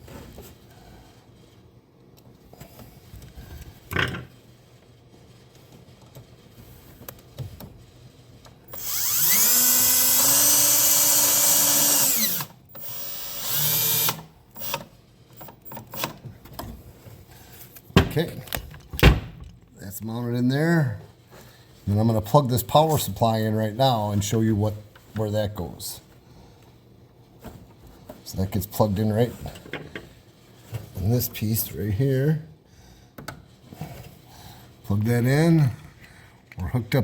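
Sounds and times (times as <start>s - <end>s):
cordless drill driving screw: 8.7s - 14.8s.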